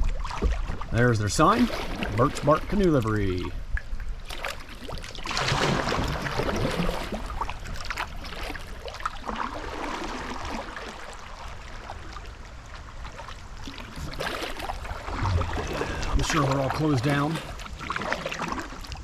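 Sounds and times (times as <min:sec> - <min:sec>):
water splashing and trickling: 0:00.0 - 0:19.0.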